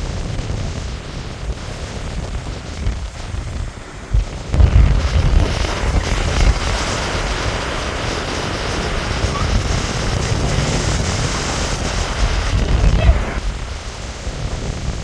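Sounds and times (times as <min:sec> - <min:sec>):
river water rushing: 0:03.8 - 0:14.2.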